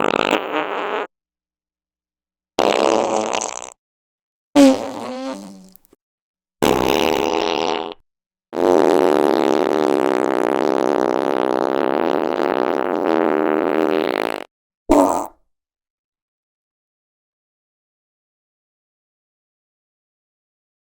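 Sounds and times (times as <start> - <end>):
fart sound effects: 0.0 - 1.1, 2.6 - 3.8, 4.6 - 5.9, 6.6 - 8.0, 8.6 - 15.4.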